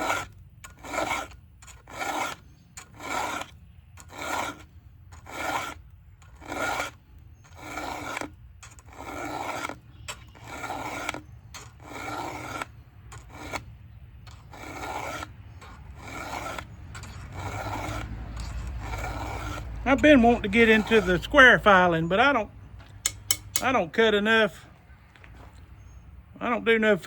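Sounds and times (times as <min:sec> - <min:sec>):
file rasping on chain cutters: 0:00.0 - 0:23.8.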